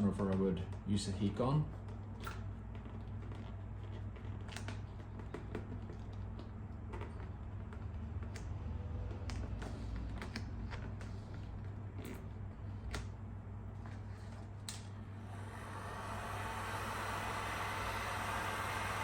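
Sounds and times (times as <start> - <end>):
heat gun blowing: 15.0 - 19.0.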